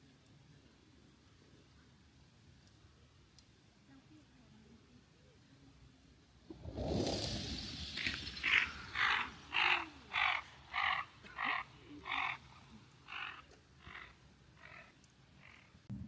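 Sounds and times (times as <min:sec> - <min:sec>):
animal giving harsh calls: 0:08.4 - 0:12.4.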